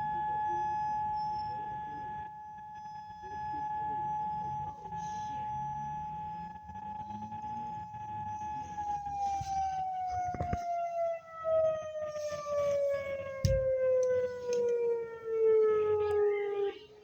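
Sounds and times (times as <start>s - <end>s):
siren winding down: 0.0s - 17.0s
low thumps: 13.4s - 14.0s.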